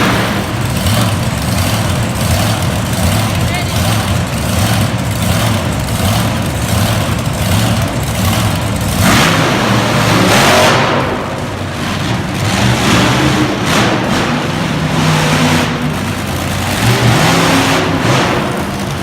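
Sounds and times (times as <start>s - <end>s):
monster truck engine revving: 0.0s - 19.0s.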